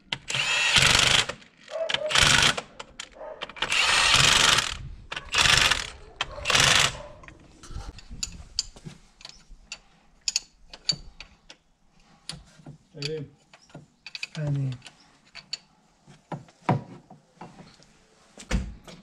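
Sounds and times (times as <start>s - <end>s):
power drill bursts: 0.3s - 1.4s, 3.6s - 5.9s.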